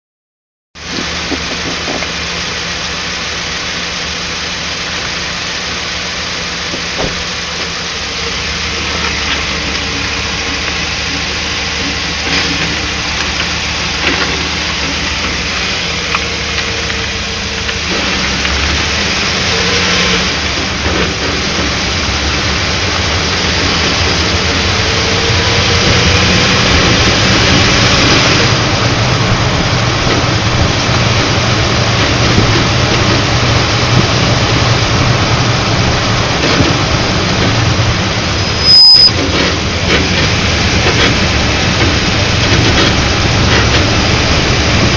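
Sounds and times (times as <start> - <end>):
vehicle engine and road noise: 0.8 - 44.9
suspension knocks: 28.8 - 38.4, 39.1 - 44.9.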